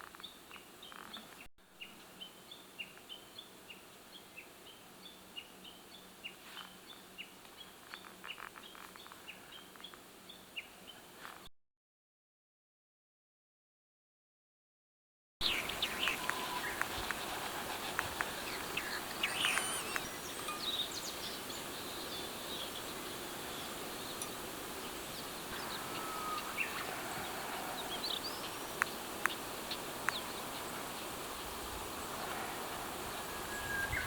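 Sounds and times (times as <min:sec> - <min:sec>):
birds chirping and calling: 0:15.4 - 0:24.4, 0:25.2 - 0:30.7
steady high hiss: 0:15.4 - 0:34.0.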